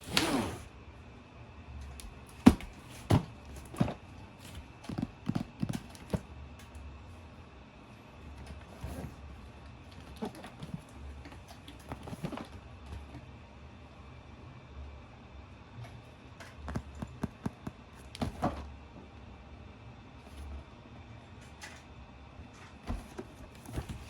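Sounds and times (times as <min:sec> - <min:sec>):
handling knocks and clicks: 0:02.0 - 0:06.3, 0:16.5 - 0:18.7.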